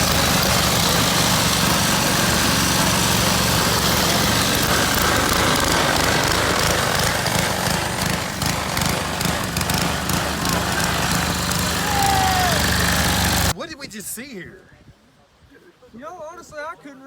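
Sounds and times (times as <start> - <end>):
lawn mower engines running: 0.0 - 13.6.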